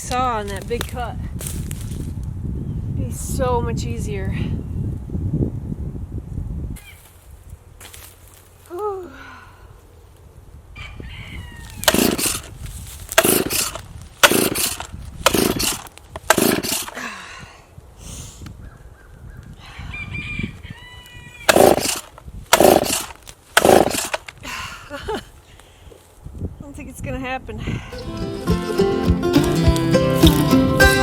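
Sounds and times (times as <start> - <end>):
chainsaw starter cord yanks: 11.8 - 17.0, 21.5 - 24.4.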